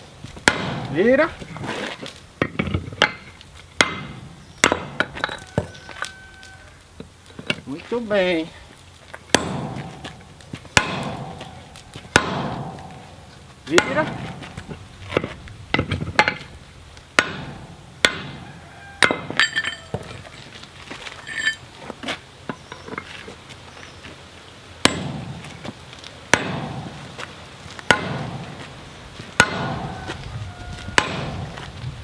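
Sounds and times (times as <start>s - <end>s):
hammer striking metal: 0.4s - 0.9s, 3.0s - 5.3s, 9.3s - 10.2s, 10.8s - 13.0s, 13.7s - 14.4s, 17.2s - 18.4s, 24.8s - 25.3s, 26.3s - 26.9s, 27.9s - 28.4s, 29.4s - 29.9s, 31.0s - 31.5s.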